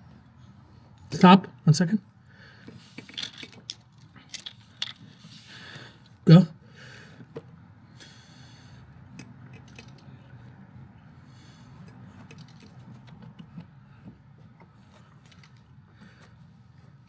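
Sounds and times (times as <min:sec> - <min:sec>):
light metallic clicks and rattles: 0:03.0 - 0:05.1, 0:09.2 - 0:10.1, 0:11.8 - 0:13.7.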